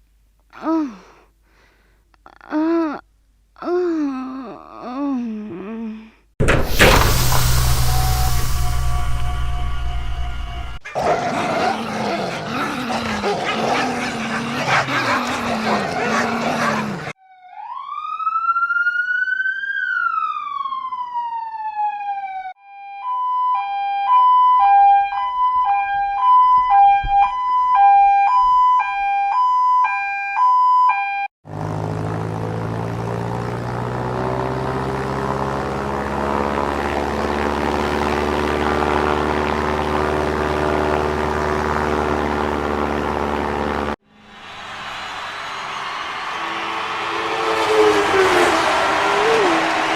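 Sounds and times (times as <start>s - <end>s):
emergency vehicle siren: 6.8s - 10.9s, 12.5s - 32.0s, 44.1s - 49.9s
two-tone hi-lo siren: 7.5s - 10.8s, 17.2s - 31.3s.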